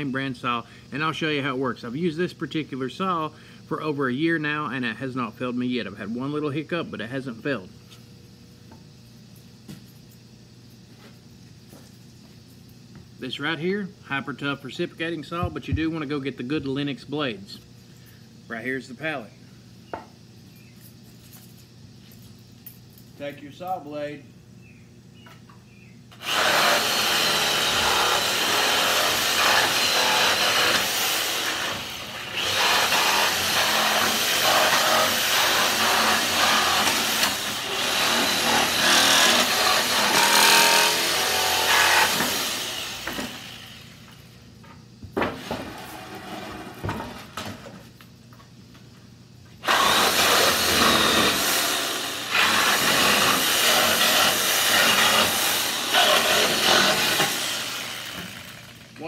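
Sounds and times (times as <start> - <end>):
reciprocating saw cutting nails: 26.1 - 43.9, 49.6 - 58.8.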